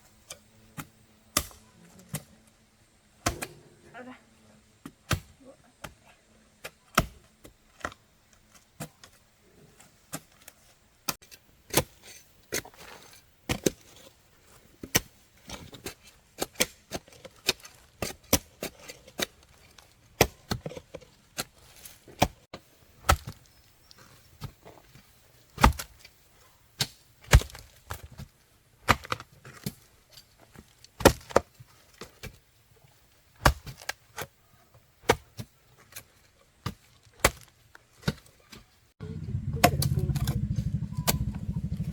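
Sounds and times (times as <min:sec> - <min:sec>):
hand tool chopping wood: 0:06.9 - 0:07.1.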